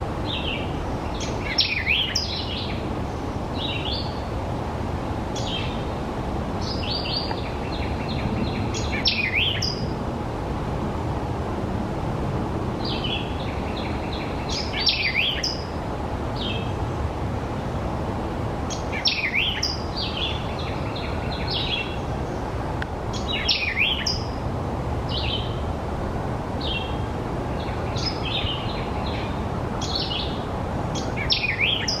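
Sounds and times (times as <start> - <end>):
vireo chirpy calls: 0.0 - 4.3, 5.3 - 6.0, 6.6 - 10.0, 12.8 - 16.8, 18.7 - 24.4, 25.1 - 25.7, 26.6 - 32.0.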